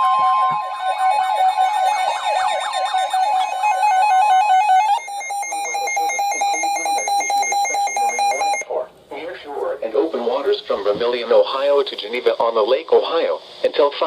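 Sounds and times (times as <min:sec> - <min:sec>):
pulsing alarm beep: 0:00.0 - 0:08.6
steady warning tone: 0:00.0 - 0:08.6.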